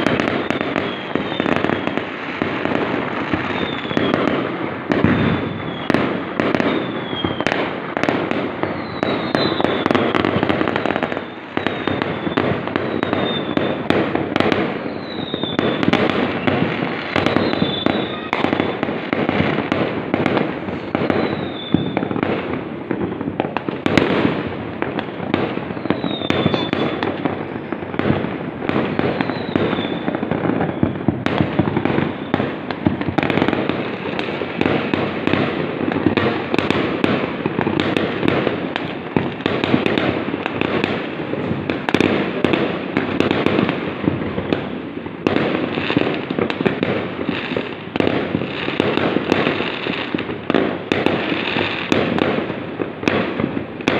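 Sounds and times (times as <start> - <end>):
firework whistles falling in pitch: 0.0 - 2.4, 3.2 - 4.2, 5.0 - 7.6, 8.6 - 13.9, 14.8 - 18.9, 20.7 - 22.1, 25.7 - 27.9, 28.9 - 31.1
fireworks bangs and crackling: 0.0 - 53.9.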